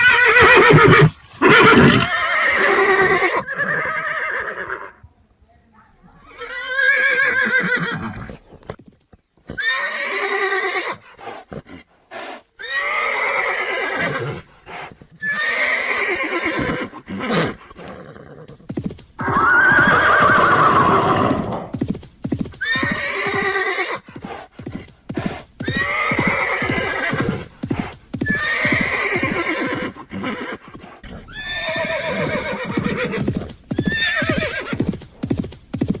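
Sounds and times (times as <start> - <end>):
horses neighing: 0.0 - 5.0, 6.3 - 8.8, 9.4 - 18.6, 19.2 - 21.8, 22.6 - 35.1
hooves clopping: 7.4 - 13.0, 13.9 - 36.0.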